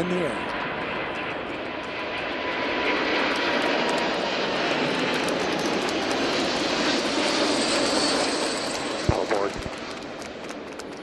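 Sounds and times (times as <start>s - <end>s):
faint jet whine: 0.0s - 11.0s
jet engines at takeoff: 0.0s - 11.0s.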